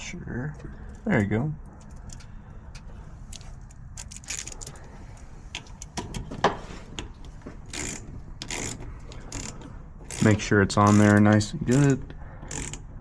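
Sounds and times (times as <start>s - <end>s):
small metal parts clicking and tapping: 1.8s - 4.8s, 7.7s - 12.9s.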